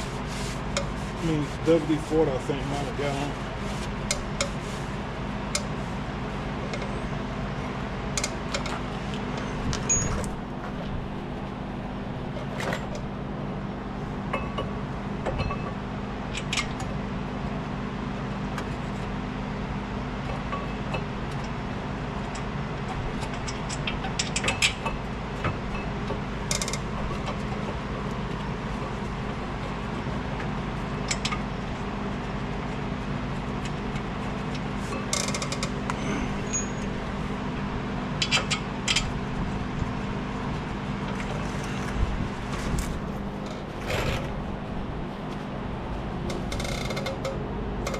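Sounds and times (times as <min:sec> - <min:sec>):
steady low hum: 0:00.0 - 0:47.9
metal tools clicking and clinking: 0:09.9 - 0:10.3, 0:36.4 - 0:36.9.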